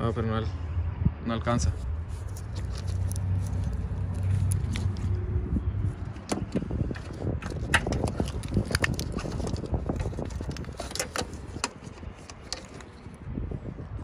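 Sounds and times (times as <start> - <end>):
tools and wiring clicking: 2.2 - 5.2, 6.1 - 13.2.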